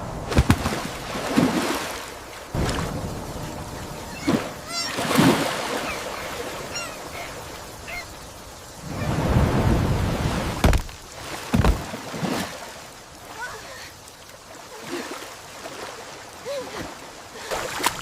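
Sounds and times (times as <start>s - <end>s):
rain: 0.0s - 18.0s
rushing water: 0.0s - 18.0s
wavering high-pitched cries: 3.7s - 8.3s.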